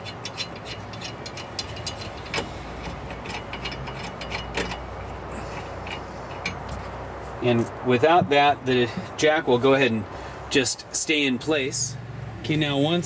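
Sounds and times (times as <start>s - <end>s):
socket ratchet clicking: 0.0s - 4.9s
metallic knocks: 0.0s - 6.8s.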